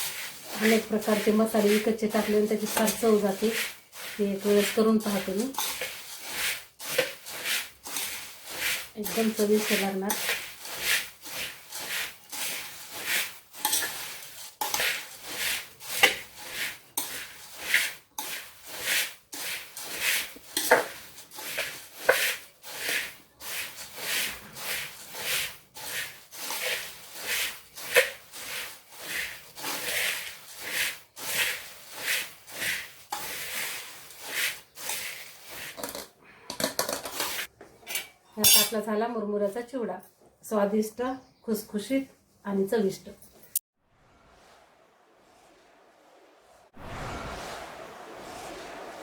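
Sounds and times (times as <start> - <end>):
puffed rice rustling: 0.0 - 36.0.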